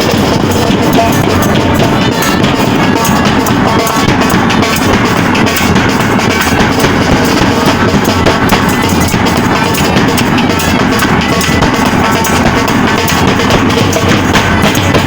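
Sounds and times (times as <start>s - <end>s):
loud music with drums: 0.0s - 15.0s.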